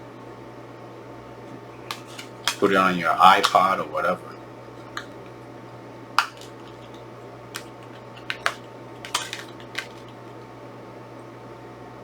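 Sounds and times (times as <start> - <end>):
steady low hum: 0.0 - 12.0
plastic cases clicking: 1.9 - 2.8, 6.2 - 7.0, 7.6 - 10.1.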